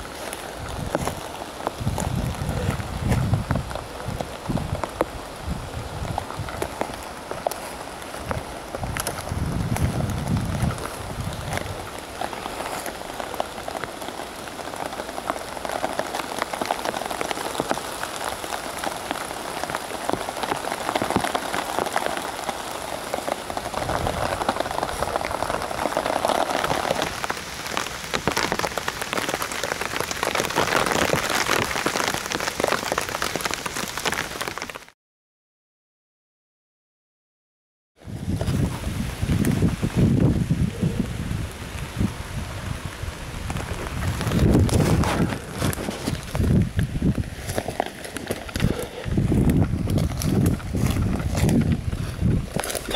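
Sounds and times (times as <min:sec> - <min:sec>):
rain pattering on shelter: 0:00.0 - 0:35.0, 0:38.0 - 0:52.9.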